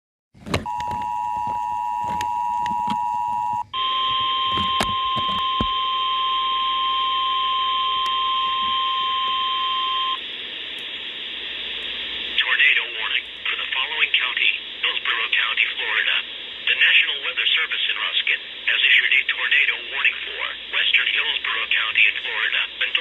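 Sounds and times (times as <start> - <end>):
single-pitch alarm tone: 0.6 - 10.2
faint radio static hiss: 0.8 - 23.0.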